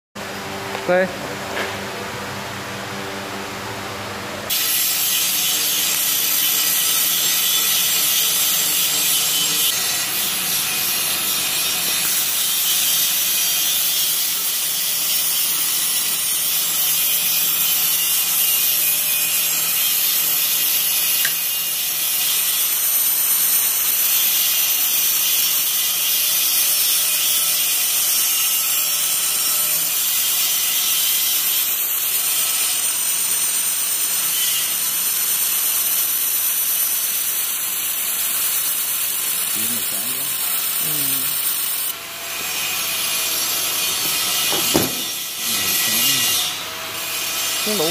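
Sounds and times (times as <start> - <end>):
laser welder hissing crackle: 4.5 - 25.2, 30.0 - 46.4.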